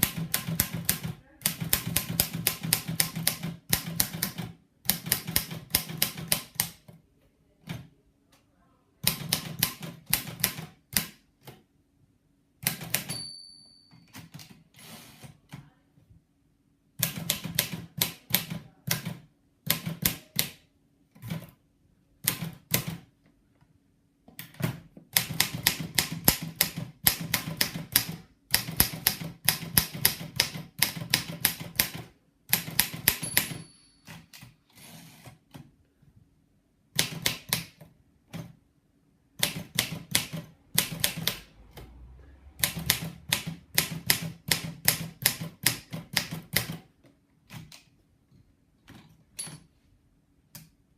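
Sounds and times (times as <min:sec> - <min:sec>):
typewriter bell ring: 0:13.0 - 0:14.3, 0:33.0 - 0:34.3.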